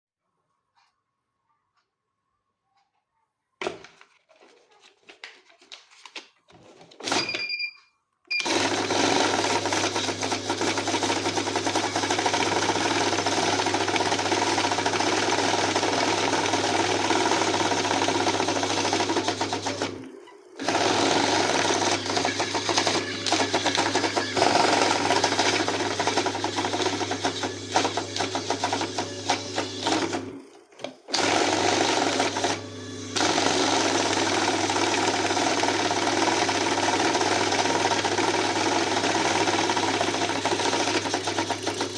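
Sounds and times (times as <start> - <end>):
short beep: 7.2 - 8.5
banknote counter motor whirring: 8.4 - 30.4, 31.1 - 41.9.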